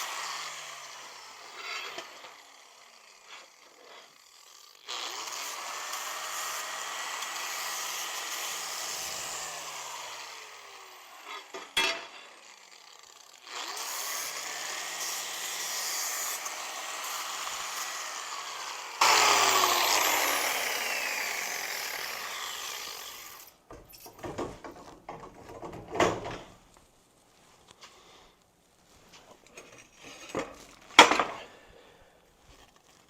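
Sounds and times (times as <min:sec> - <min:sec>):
power tool running: 0:00.0 - 0:23.6
metallic clanks and knocks: 0:23.7 - 0:26.6.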